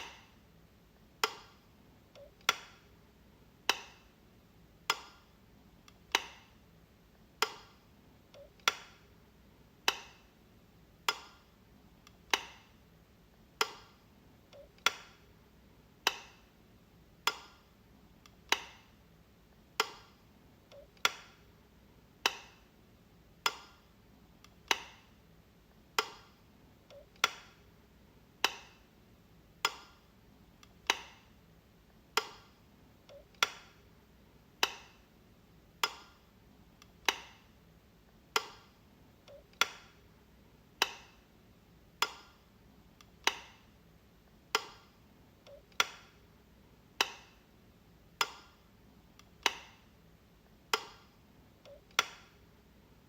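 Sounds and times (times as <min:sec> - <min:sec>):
faint switch tick: 0:01.2 - 0:02.9, 0:03.6 - 0:04.2, 0:09.8 - 0:10.4, 0:11.0 - 0:15.3, 0:17.2 - 0:19.0, 0:19.7 - 0:21.5, 0:23.4 - 0:25.2, 0:28.4 - 0:28.9, 0:29.6 - 0:33.9, 0:35.8 - 0:40.1, 0:42.0 - 0:42.4, 0:44.5 - 0:46.2, 0:47.0 - 0:47.5, 0:48.1 - 0:52.4.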